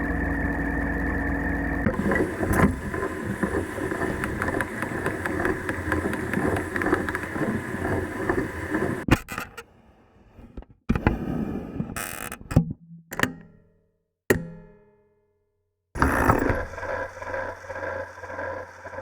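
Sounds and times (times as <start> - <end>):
tape recorder stopping click: 0.0 - 9.0
tape recorder motor rattling: 0.0 - 9.1.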